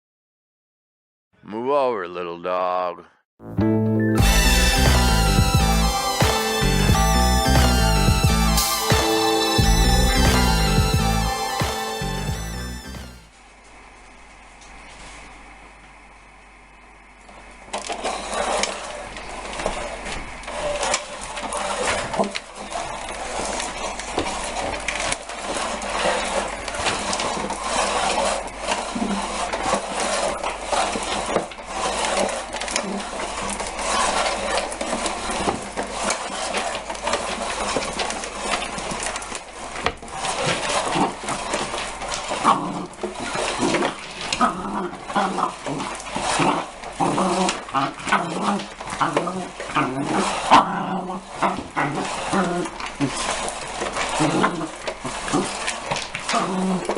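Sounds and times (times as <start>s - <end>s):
puppy clattering vacuum cleaner: 17.7s - 56.9s.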